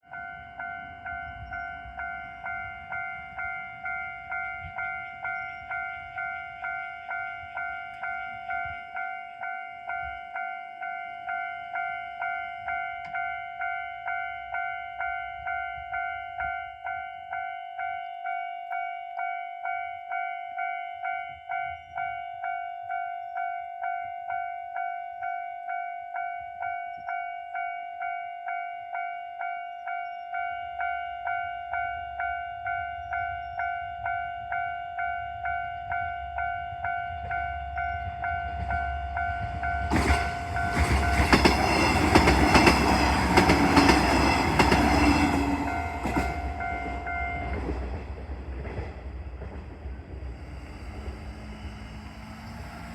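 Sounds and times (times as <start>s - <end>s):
level-crossing warning bell: 0.0s - 48.9s
low rumble of railcar: 0.0s - 52.9s.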